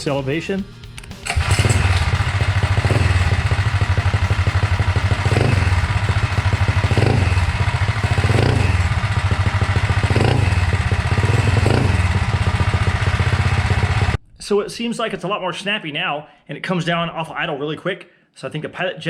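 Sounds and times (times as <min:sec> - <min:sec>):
engine idling and revving: 0:00.8 - 0:14.2.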